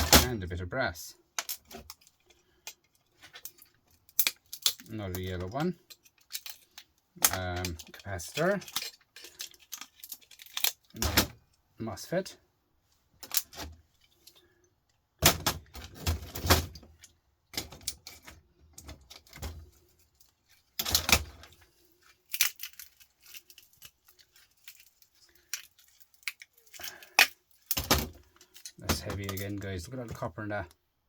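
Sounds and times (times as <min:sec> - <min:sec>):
metal tools clinking and rattling: 0:01.4 - 0:11.3.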